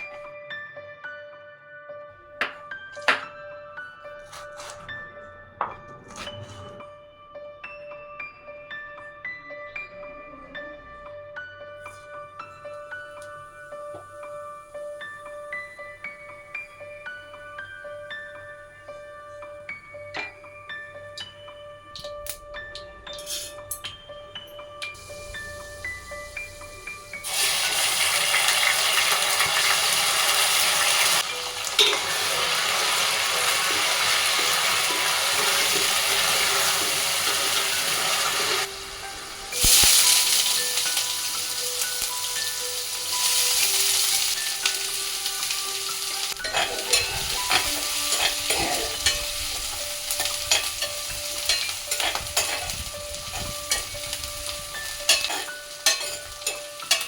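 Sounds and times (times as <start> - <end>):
food sizzling in hot oil: 25.0 - 57.0.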